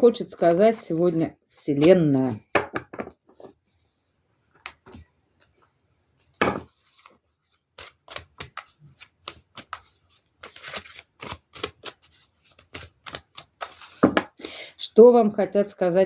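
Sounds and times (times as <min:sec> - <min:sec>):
thump on table: 0:02.6 - 0:03.1, 0:06.4 - 0:06.7, 0:14.0 - 0:14.3
cards slapping and rustling: 0:06.2 - 0:14.4.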